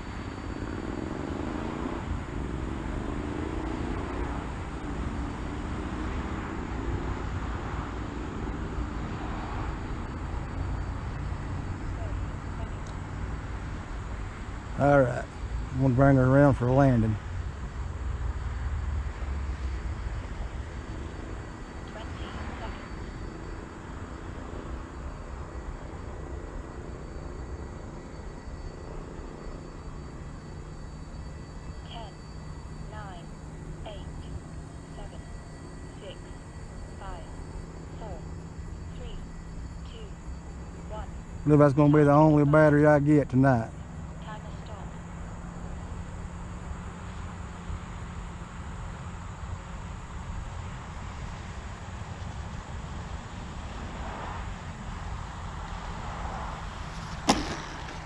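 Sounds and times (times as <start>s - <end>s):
steady low rumble: 0.0s - 46.0s
model plane motor whine: 54.6s - 58.0s.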